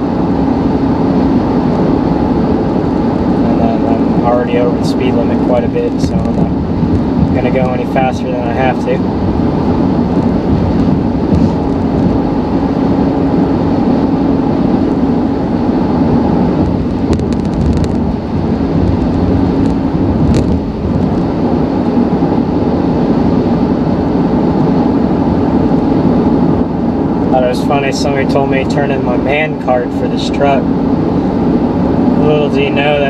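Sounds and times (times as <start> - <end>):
engine and road noise in cab: 0.0 - 33.0
faint steady hum: 0.0 - 33.0.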